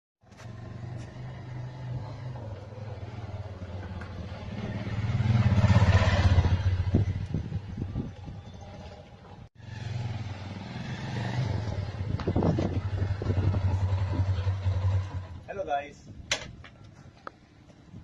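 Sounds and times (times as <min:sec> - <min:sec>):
motorcycle engine running: 0:11.5 - 0:15.5.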